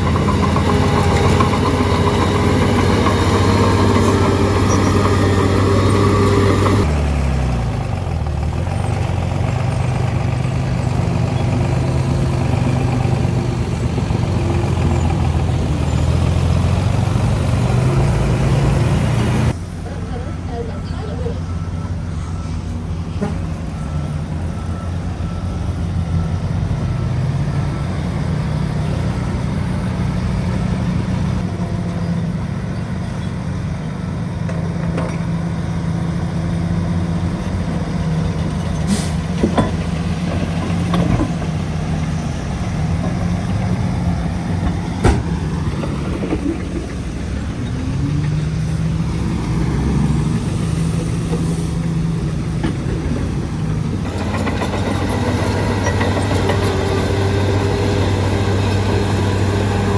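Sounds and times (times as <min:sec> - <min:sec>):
bulldozer diesel engine running: 0:00.0 - 0:59.9.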